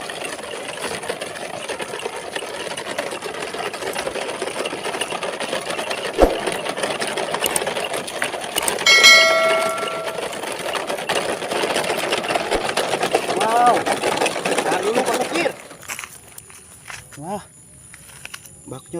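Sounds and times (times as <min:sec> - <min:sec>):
steady pitched tone: 0:08.9 - 0:10.3.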